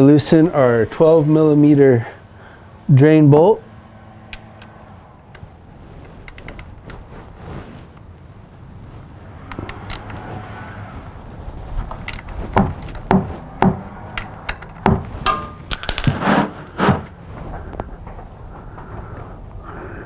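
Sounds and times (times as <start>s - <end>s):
metallic knocks and clinks: 9.5s - 10.3s, 11.9s - 17.1s.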